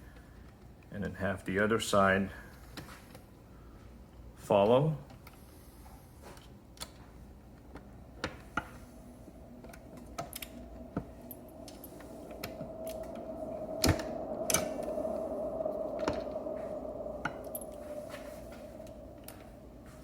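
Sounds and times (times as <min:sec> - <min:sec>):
steady hum: 0:07.9 - 0:20.0.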